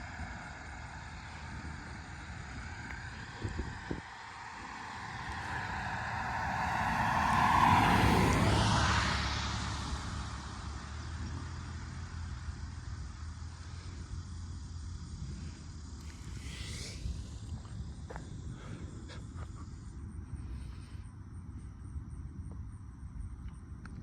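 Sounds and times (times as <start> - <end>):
vehicle driving past: 0.0 - 14.7
steady low hum: 0.0 - 24.0.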